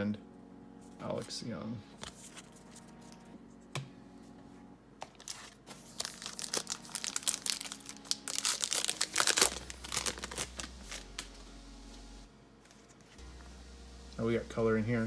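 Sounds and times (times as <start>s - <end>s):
foil wrapper crinkling: 5.0s - 11.4s.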